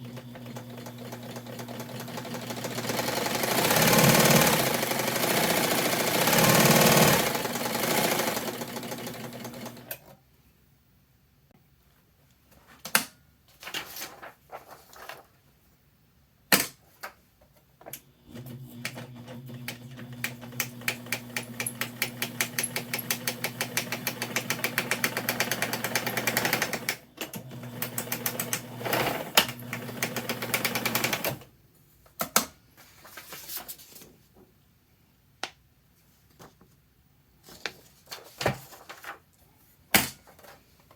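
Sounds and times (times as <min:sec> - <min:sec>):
sewing machine stitching: 0:00.0 - 0:10.1, 0:18.3 - 0:31.5.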